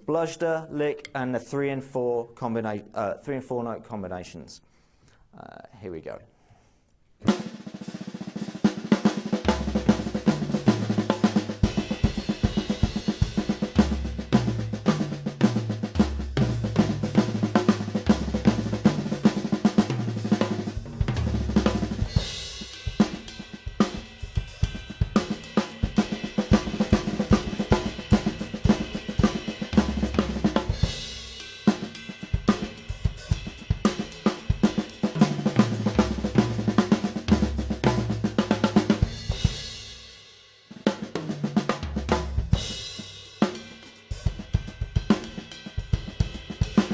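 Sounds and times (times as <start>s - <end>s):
snare drum rapid patterns: 7.2s - 40.0s, 40.7s - 46.9s
toms and bass drum: 7.2s - 40.1s, 40.9s - 46.9s.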